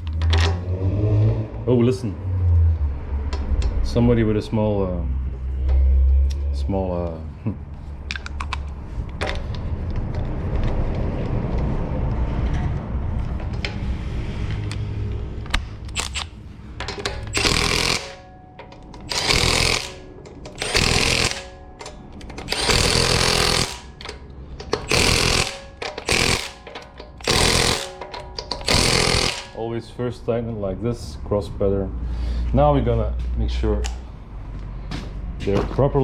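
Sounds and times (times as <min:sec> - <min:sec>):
impact wrench bursts: 0:15.9 - 0:16.4, 0:17.0 - 0:18.3, 0:19.0 - 0:29.6.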